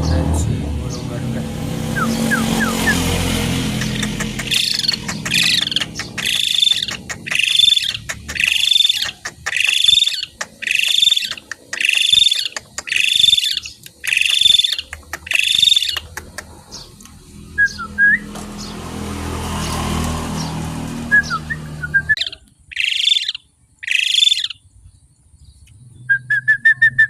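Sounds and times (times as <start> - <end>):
starling harsh rasping call: 1.4 - 16.9, 21.1 - 24.6.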